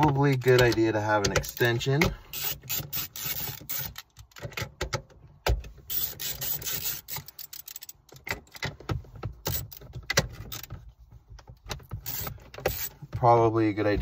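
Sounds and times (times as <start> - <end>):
hand tools clicking and clinking: 5.9 - 8.8.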